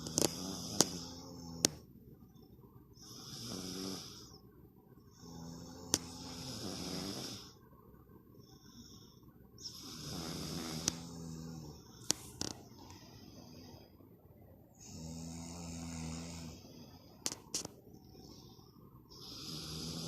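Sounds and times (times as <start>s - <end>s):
snoring: 0.0s - 1.8s, 3.0s - 4.4s, 5.1s - 7.6s, 9.6s - 12.5s, 14.8s - 16.6s, 19.1s - 20.0s.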